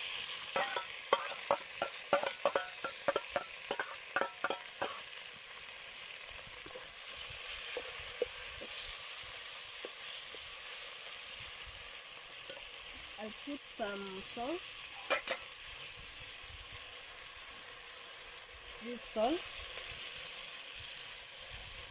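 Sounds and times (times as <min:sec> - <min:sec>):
onion sizzling in hot oil: 0:00.0 - 0:21.9
spoon clinking against pot: 0:00.6 - 0:05.0.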